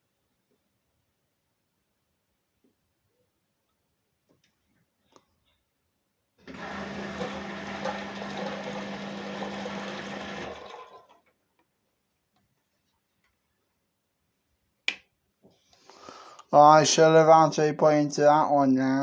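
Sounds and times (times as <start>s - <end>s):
water rushing into washing machine: 6.4s - 11.3s.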